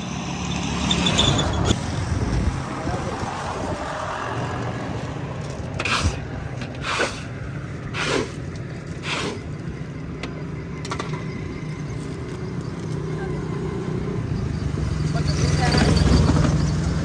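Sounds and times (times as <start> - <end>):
low rumble of traffic: 0.0 - 17.0
short swishing scrapes: 5.8 - 7.3, 7.9 - 8.4, 9.0 - 9.5.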